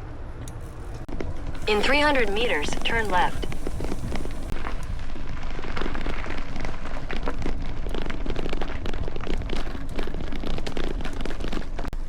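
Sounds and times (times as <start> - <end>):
wind buffeting microphone: 1.6 - 4.6.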